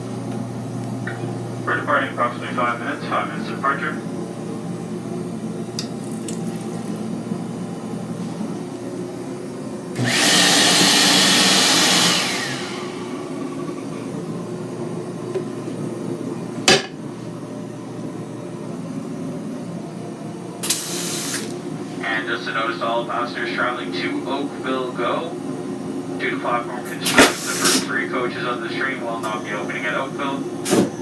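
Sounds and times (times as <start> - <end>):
steady low hum: 0.0 - 10.0, 21.4 - 31.0
toilet flushing: 5.4 - 8.3, 9.9 - 17.0, 20.6 - 22.0, 26.8 - 27.9.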